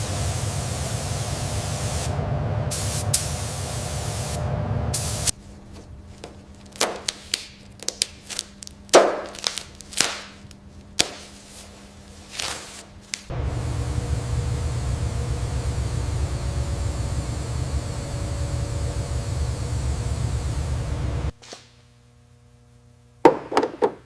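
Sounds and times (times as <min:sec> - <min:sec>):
paint spray gun hissing: 0:00.0 - 0:02.1, 0:02.7 - 0:05.3
faint steady hum: 0:00.0 - 0:24.0.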